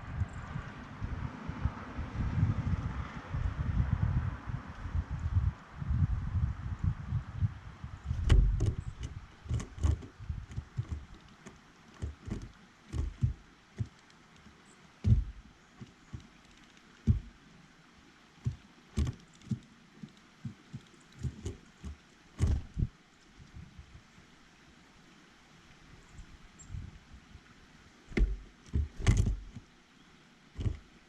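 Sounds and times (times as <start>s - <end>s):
wind buffeting microphone: 0.0s - 13.9s, 15.0s - 16.3s, 17.0s - 17.4s, 20.4s - 24.1s, 26.1s - 27.5s, 28.1s - 29.6s, 30.6s - 30.9s
birds tapping at feeder: 8.0s - 17.4s, 18.3s - 22.9s, 28.1s - 29.7s, 30.6s - 31.0s.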